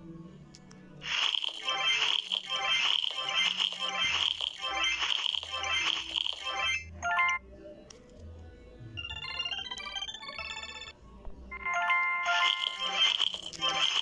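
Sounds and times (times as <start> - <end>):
electronic beeping melody: 9.0 - 10.9.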